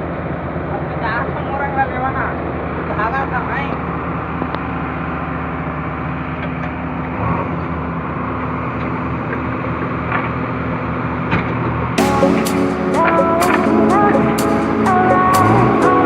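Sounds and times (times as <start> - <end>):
low rhythmic pulsing: 12.0 - 16.0.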